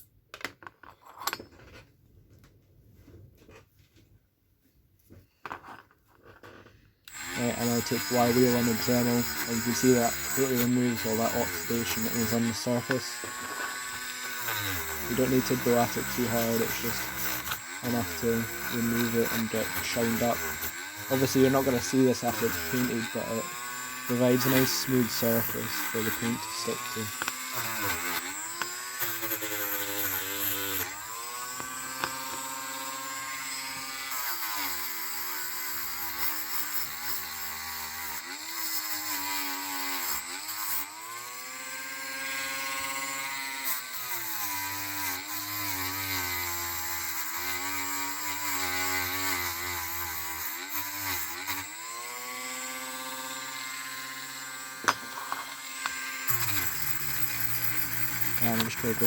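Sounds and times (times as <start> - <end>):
rotary tool wire wheel on metal: 7.1 - 32.3, 53.4 - 59.0.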